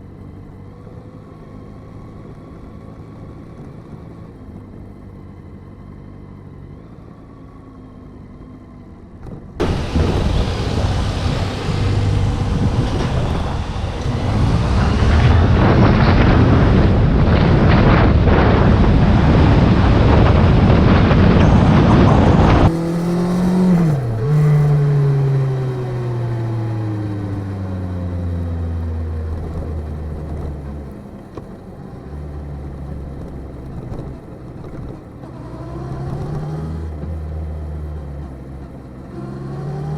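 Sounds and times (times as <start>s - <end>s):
motorcycle engine: 0.0s - 39.9s
wind noise rushing: 9.6s - 24.3s.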